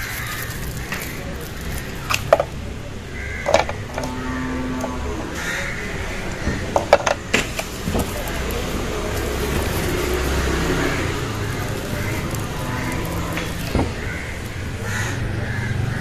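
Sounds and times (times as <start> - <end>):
washing machine parts clicking: 3.4 - 4.2.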